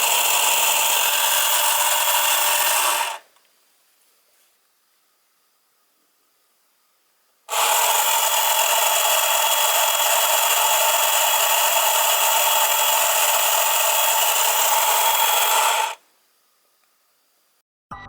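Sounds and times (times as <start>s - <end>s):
toy motor whirring: 0.0s - 3.3s, 7.5s - 16.0s.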